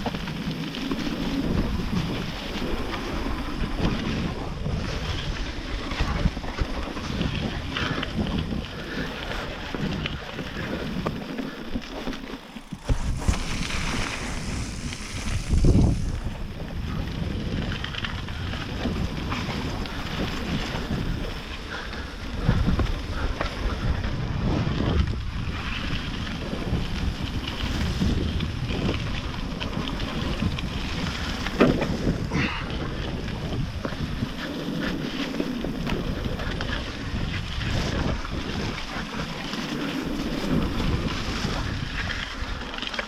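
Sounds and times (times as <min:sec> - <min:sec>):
bike tyre noise on trail: 0:00.0 - 0:43.0
wind buffeting microphone: 0:00.0 - 0:43.0
bike thumping over roots: 0:11.7 - 0:20.8.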